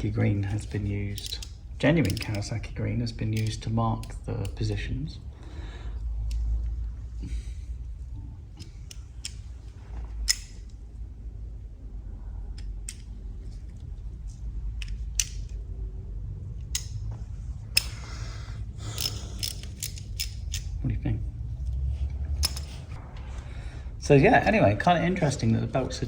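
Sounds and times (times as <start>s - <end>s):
low steady hum: 0.0s - 26.0s
hand tools clicking and knocking: 0.4s - 2.6s, 3.2s - 4.6s, 10.2s - 10.7s, 14.8s - 15.6s, 17.7s - 20.8s, 22.3s - 22.9s.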